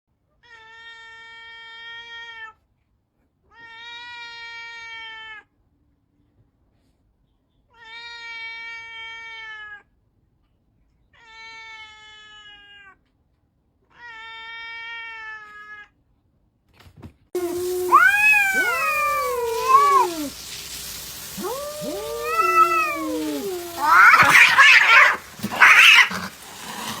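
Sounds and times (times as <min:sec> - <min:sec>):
cats meowing and yowling: 0:17.4 - 0:27.0
cats screeching: 0:17.4 - 0:27.0.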